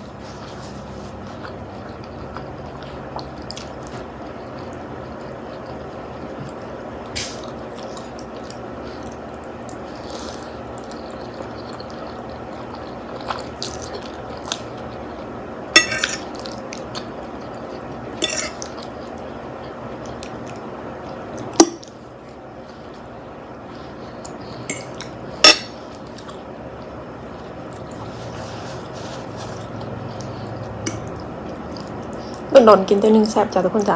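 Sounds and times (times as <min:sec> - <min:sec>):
fork clinking on a plate: 0:15.8 - 0:16.2, 0:18.2 - 0:18.7, 0:24.7 - 0:25.8.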